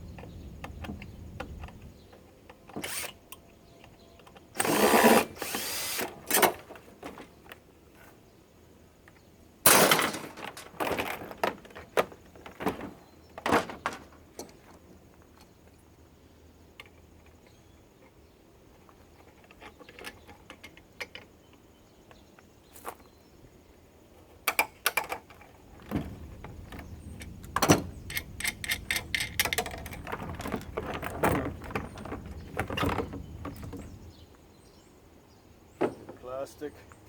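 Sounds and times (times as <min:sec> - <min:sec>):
plastic parts clicking and rattling: 0:24.5 - 0:34.1.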